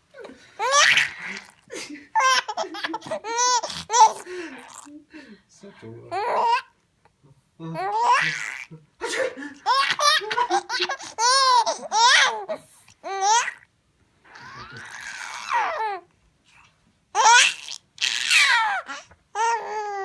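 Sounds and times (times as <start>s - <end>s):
baby laughing and squealing: 0.6s - 4.9s, 7.8s - 8.7s, 9.6s - 13.6s, 14.4s - 16.0s, 17.2s - 20.0s.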